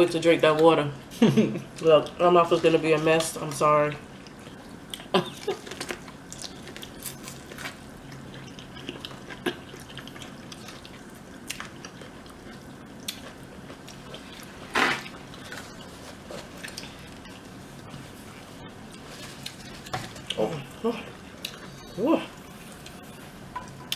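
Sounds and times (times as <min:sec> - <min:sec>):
wet chewing and smacking: 0:04.1 - 0:17.6.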